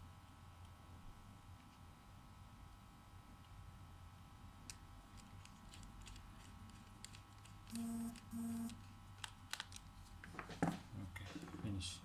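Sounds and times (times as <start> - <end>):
short buzzes: 7.7 - 8.8.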